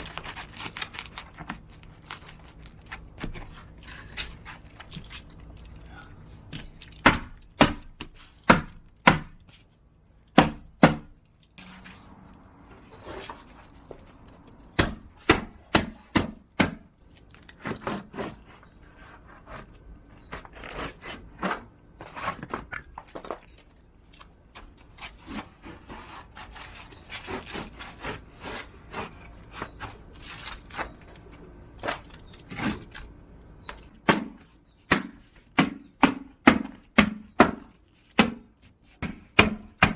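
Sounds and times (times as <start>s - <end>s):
hammer striking wooden boards: 6.6s - 9.4s, 10.4s - 11.2s, 14.8s - 16.9s, 34.0s - 39.9s.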